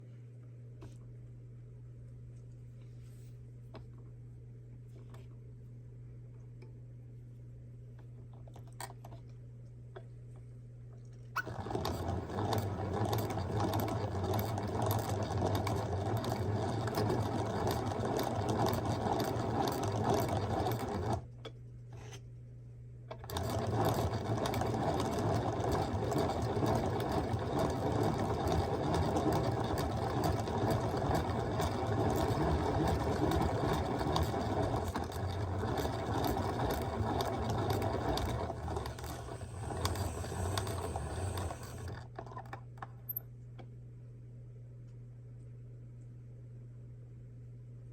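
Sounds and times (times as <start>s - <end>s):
small machine whirring and rattling: 11.2s - 22.2s, 23.1s - 43.2s.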